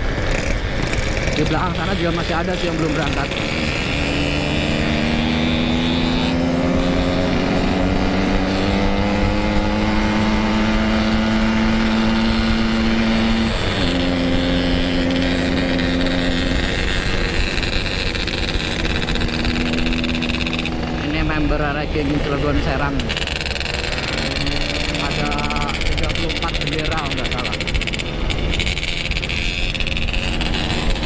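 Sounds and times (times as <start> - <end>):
motorcycle engine running: 0.0 - 31.0.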